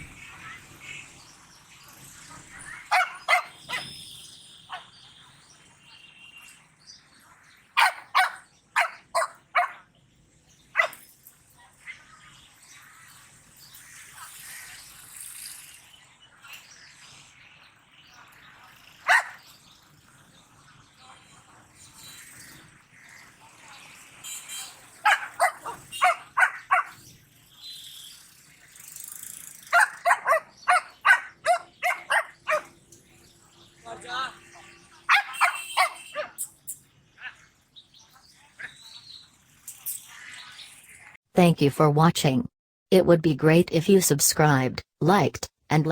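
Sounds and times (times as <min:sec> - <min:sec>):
dog barking: 0:02.8 - 0:03.9, 0:04.7 - 0:04.9, 0:07.8 - 0:09.8, 0:10.8 - 0:11.0, 0:19.0 - 0:19.4, 0:25.0 - 0:27.0, 0:29.7 - 0:32.7, 0:35.1 - 0:36.4.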